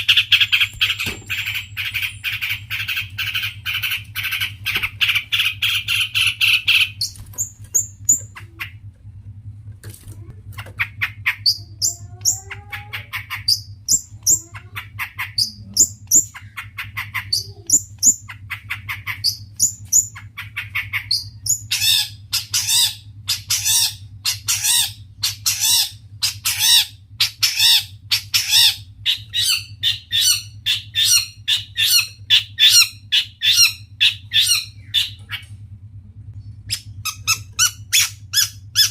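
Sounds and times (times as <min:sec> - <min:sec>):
shrike singing harsh chattering: 0:00.0 - 0:08.8, 0:36.7 - 0:38.9
steady low hum: 0:00.0 - 0:38.9.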